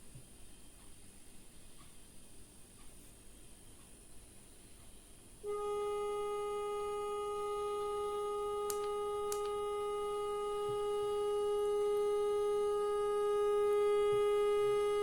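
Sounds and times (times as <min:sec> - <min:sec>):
electronic test tone: 0:05.4 - 0:15.0.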